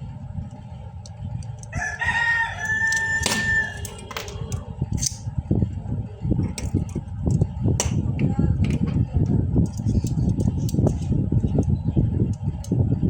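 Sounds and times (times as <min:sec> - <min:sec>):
low rumble: 0:00.0 - 0:13.0
rooster crowing: 0:01.7 - 0:04.4.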